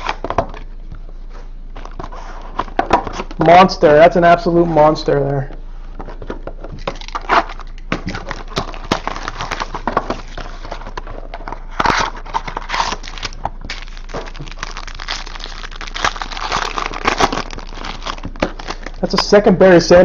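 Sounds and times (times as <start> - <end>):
plastic packaging crinkling: 6.8 - 19.4.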